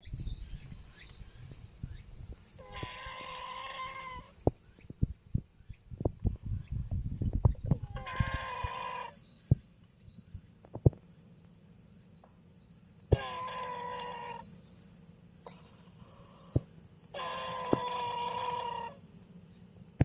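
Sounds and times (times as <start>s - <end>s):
cat snoring with whistling squeak: 2.6s - 4.3s, 13.1s - 14.5s, 15.4s - 19.0s.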